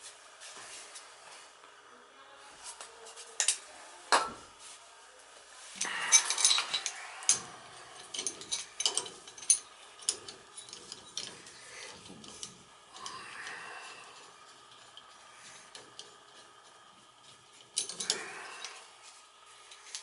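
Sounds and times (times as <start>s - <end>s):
metal clinks and knocks: 5.8s - 13.2s, 14.1s - 18.8s
metal rattling: 5.8s - 18.9s
tools scraping metal: 5.8s - 19.0s.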